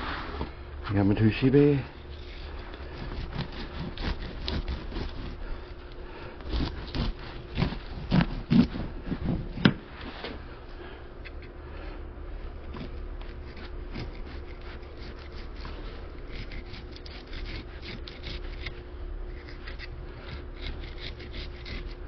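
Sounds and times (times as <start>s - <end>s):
knife scraping fish scales: 2.1s - 5.4s, 6.4s - 9.4s, 12.7s - 22.0s.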